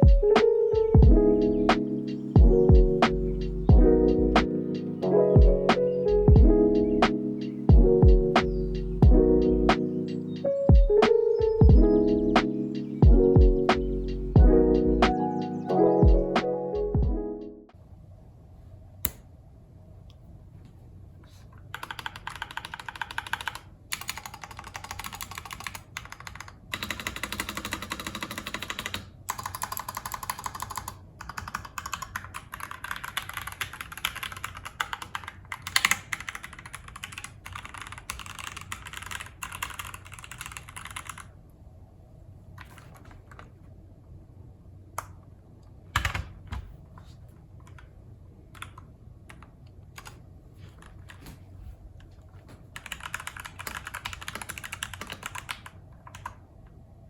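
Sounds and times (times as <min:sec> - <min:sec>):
mechanical keyboard typing: 0:21.7 - 0:41.4, 0:48.5 - 0:50.2, 0:52.8 - 0:56.4.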